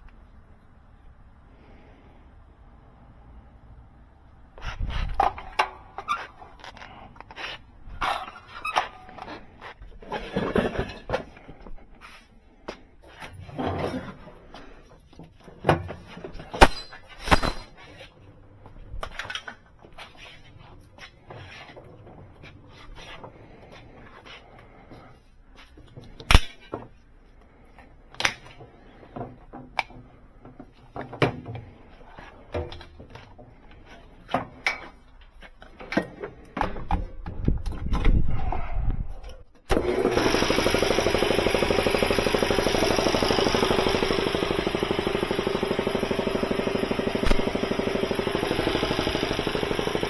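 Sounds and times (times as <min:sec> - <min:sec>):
hand tools and metal parts clanking: 0:16.6 - 0:17.7.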